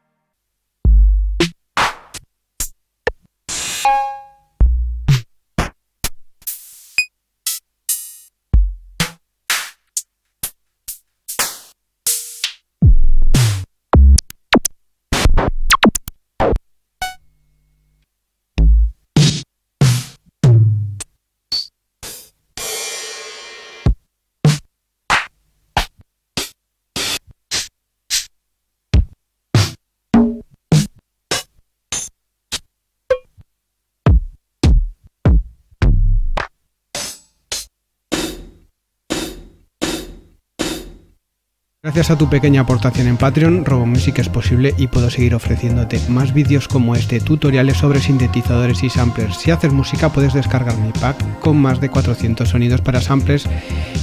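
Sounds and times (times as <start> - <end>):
deep kick drums: 0.9 - 1.4, 4.6 - 5.2, 8.6 - 9.0, 12.8 - 14.2, 34.1 - 36.4
crisp hi-hats: 6.4 - 12.6, 42.0 - 54.0.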